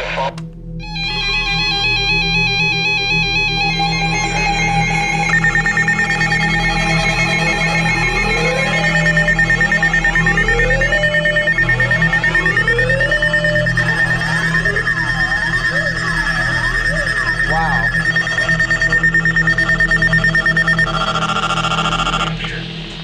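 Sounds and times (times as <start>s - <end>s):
rising pitch sweeps: 0.0s - 22.7s
steady high tone: 0.0s - 23.0s
quick up-and-down warbles: 8.8s - 22.8s.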